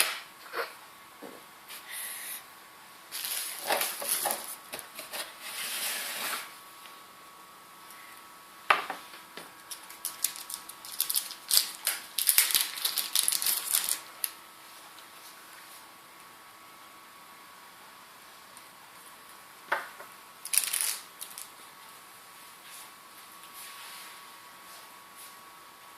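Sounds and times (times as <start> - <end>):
packaging rustling: 9.7 - 14.1.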